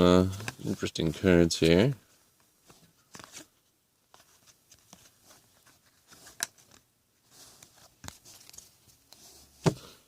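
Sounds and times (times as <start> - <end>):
trading cards rustling: 2.6 - 9.8.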